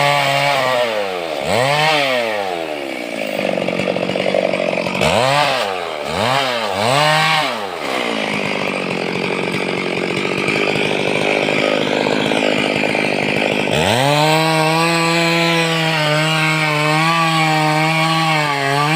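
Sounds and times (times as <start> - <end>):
chainsaw cutting wood: 0.0 - 18.9
chainsaw engine whining: 0.0 - 18.9.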